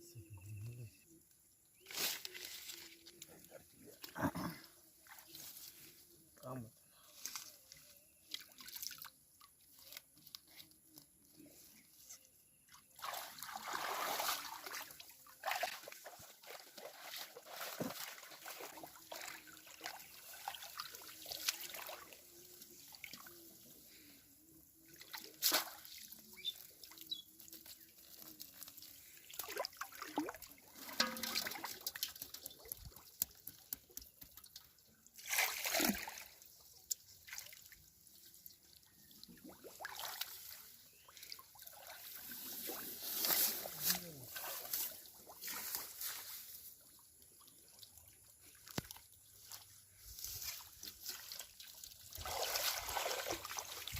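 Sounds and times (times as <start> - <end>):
water sloshing: 13.0 - 23.3, 24.8 - 36.5, 50.8 - 53.9
water trickling and dripping: 24.6 - 42.4.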